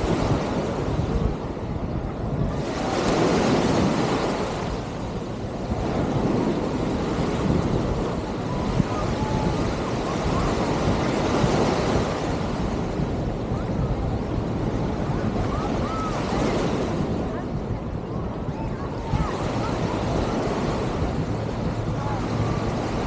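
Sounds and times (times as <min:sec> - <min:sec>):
surf washing onto beach: 0:00.0 - 0:23.0
wind buffeting microphone: 0:00.0 - 0:23.0.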